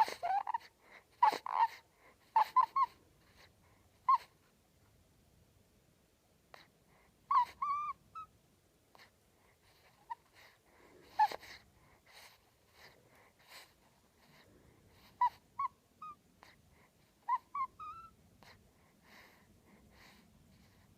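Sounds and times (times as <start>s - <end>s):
baby squeaking and grunting: 0.0s - 3.0s, 7.3s - 8.3s, 17.2s - 18.2s.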